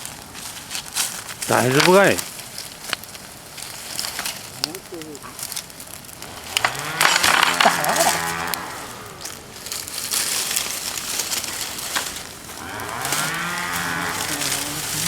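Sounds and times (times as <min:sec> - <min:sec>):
bonfire crackling: 0:00.0 - 0:15.0
cow mooing: 0:06.5 - 0:09.3, 0:12.6 - 0:15.0.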